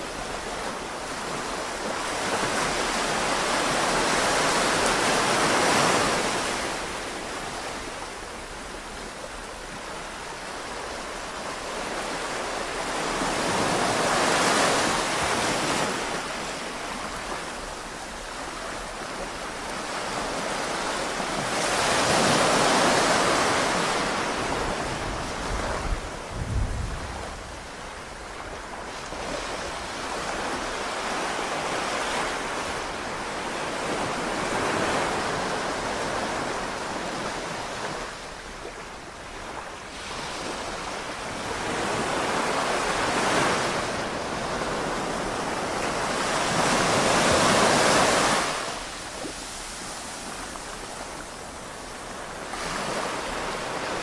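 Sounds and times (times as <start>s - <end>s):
sea waves washing onto beach: 0.0s - 54.0s
wind rumble on microphone: 21.4s - 31.3s.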